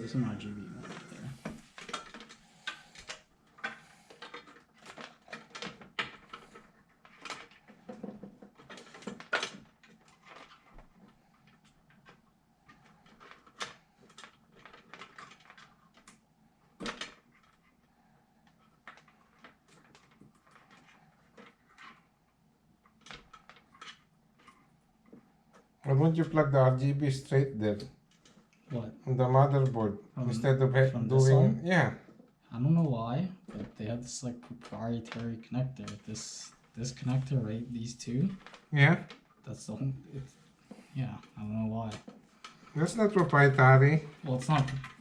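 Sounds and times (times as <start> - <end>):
computer parts clicking and rattling: 0.2 - 16.2.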